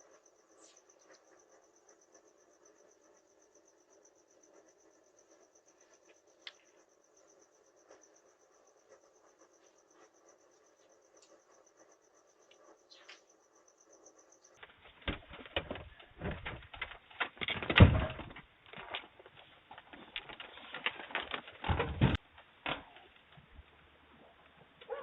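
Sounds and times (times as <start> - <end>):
knocking and rattling: 14.6 - 23.7.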